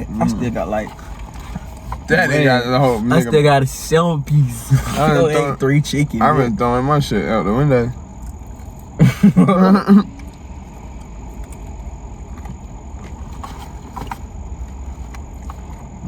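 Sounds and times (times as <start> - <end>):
man's voice: 0.0 - 1.0, 2.1 - 7.9
low background rumble: 0.0 - 16.0.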